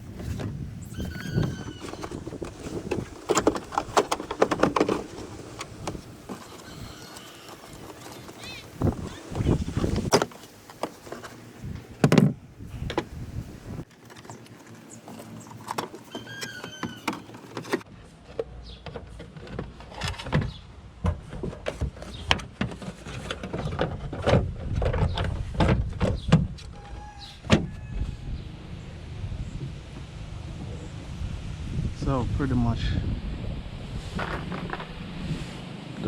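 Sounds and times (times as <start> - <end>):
high squeak: 0.9 - 2.2, 16.1 - 17.2
clicks and clatter of handling parts: 1.8 - 8.8, 13.8 - 20.5.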